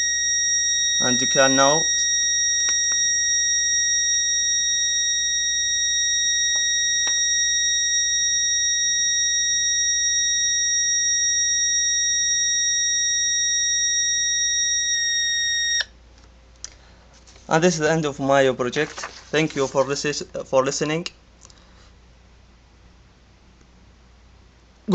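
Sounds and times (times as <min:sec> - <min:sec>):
fire alarm high-pitched tone: 0:00.0 - 0:15.9.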